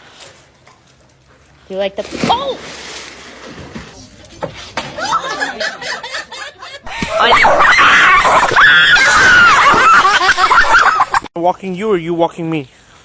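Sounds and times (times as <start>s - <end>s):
people laughing: 5.0s - 11.3s.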